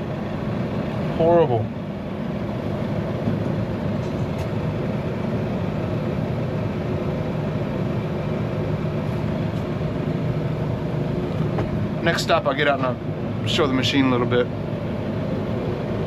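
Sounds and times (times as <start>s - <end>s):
vehicle engine drone: 0.0s - 16.0s.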